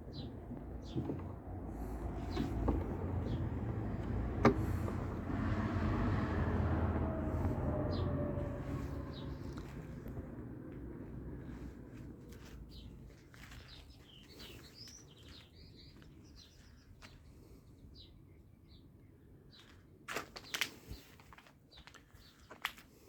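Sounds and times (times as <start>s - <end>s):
low background rumble: 0.0s - 13.1s
birds chirping faintly: 12.5s - 19.8s.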